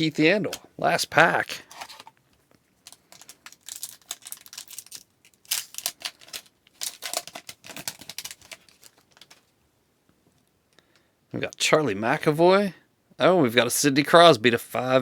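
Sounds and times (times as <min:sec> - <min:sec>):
wrapper tearing and crinkling: 0:02.8 - 0:09.5.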